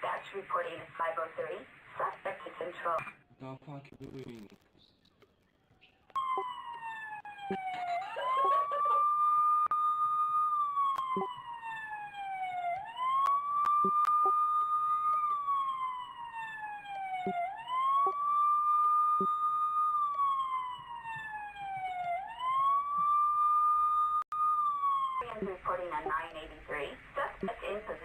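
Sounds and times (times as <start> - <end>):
police siren wailing: 5.7 - 28.0.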